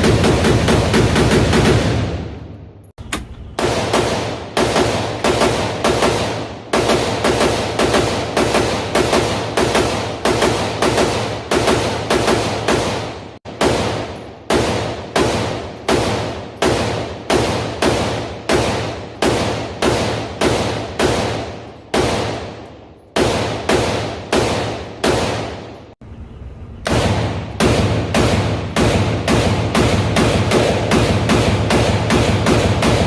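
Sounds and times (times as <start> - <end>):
rifle shots echoing: 0.0 - 26.0, 26.8 - 33.0.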